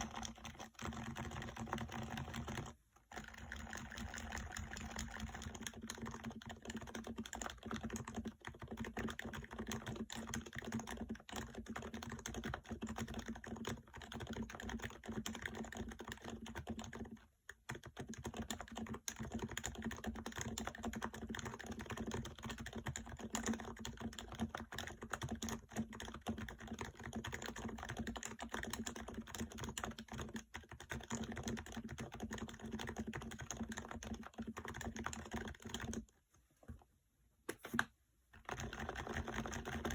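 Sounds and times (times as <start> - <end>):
muted keyboard typing: 0.0 - 36.1, 37.5 - 39.9.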